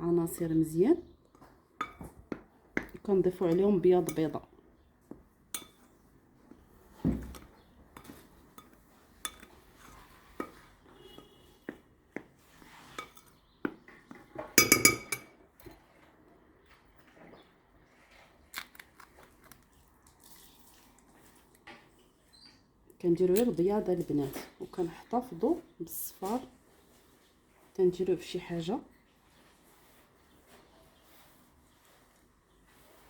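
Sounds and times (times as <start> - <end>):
bowls and utensils clicking: 14.6 - 15.3.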